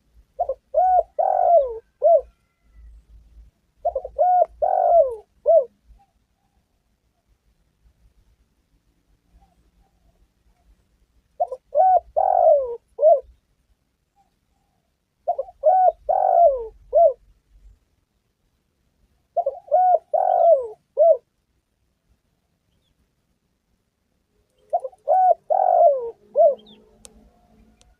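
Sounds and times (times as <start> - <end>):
dove cooing: 0.3 - 2.9, 3.8 - 6.7, 11.4 - 13.4, 14.2 - 17.3, 19.3 - 21.3, 24.6 - 27.9.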